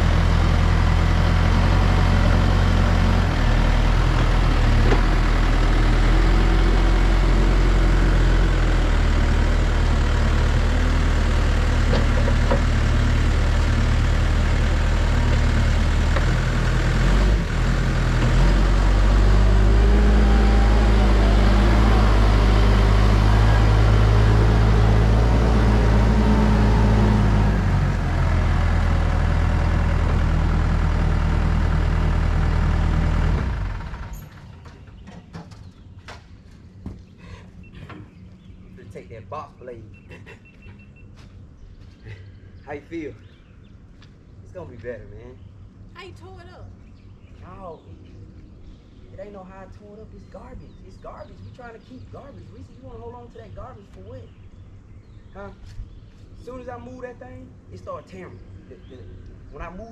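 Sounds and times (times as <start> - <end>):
diesel engine running: 0.0 - 35.0.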